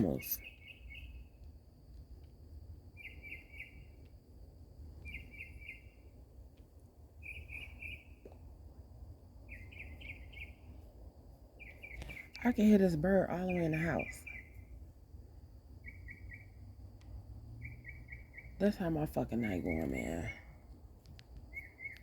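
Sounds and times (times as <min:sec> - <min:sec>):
bird chirping: 0:00.0 - 0:01.5, 0:02.9 - 0:04.1, 0:04.9 - 0:06.2, 0:07.2 - 0:08.4, 0:09.4 - 0:14.8, 0:15.8 - 0:16.8, 0:17.6 - 0:20.6, 0:21.4 - 0:22.0
low background rumble: 0:00.0 - 0:22.0.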